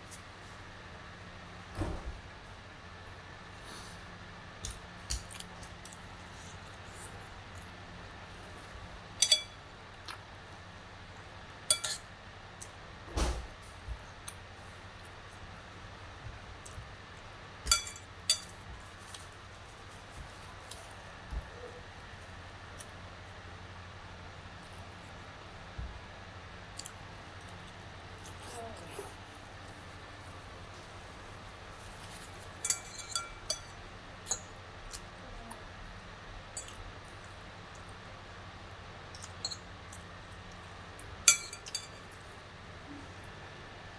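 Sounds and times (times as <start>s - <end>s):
steady low hum: 0.0s - 43.9s
cutlery clinking against a dish: 9.2s - 9.6s, 11.7s - 12.1s, 17.6s - 19.2s, 32.0s - 35.0s, 36.6s - 36.8s, 39.2s - 40.1s, 41.3s - 42.3s.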